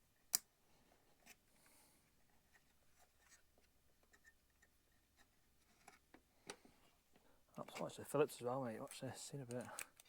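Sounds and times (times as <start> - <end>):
faint handling clicks and rustles: 1.1 - 10.0.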